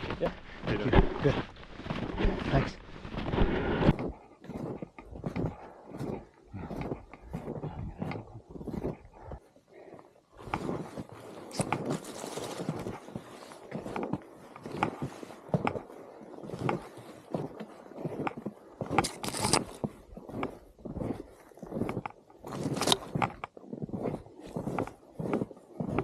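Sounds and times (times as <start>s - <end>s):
snowshoe footsteps crunching in snow: 0.0s - 26.0s.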